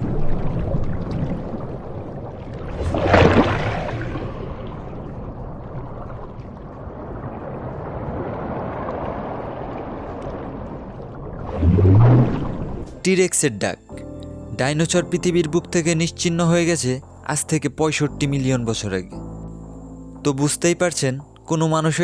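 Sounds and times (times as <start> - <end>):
underwater rushing water: 0.0 - 13.0.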